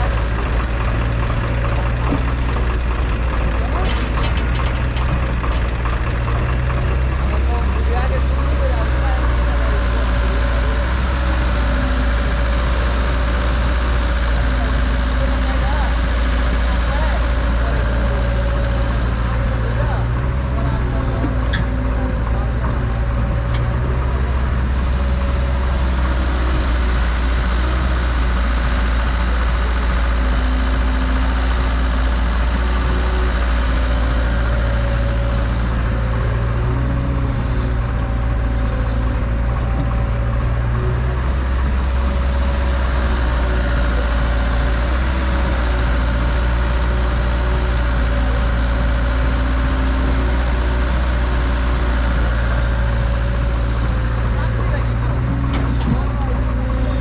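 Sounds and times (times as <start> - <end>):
diesel engines running: 0.0 - 57.0.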